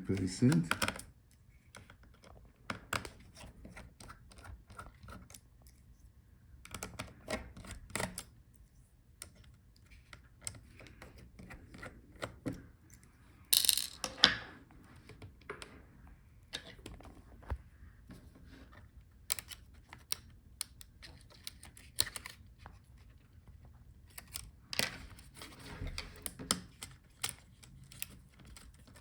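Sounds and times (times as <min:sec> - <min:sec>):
clicks and taps of small parts: 0:00.1 - 0:05.4, 0:19.3 - 0:22.4.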